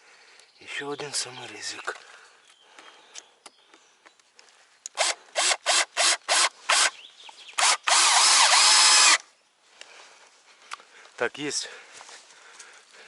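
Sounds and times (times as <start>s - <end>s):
power drill driving screw: 4.9s - 6.9s, 7.6s - 9.2s.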